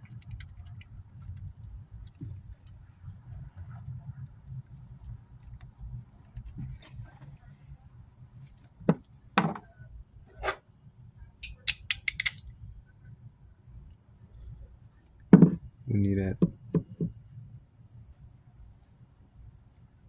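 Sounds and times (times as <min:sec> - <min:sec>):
metal hand tools clinking: 0:11.4 - 0:12.5.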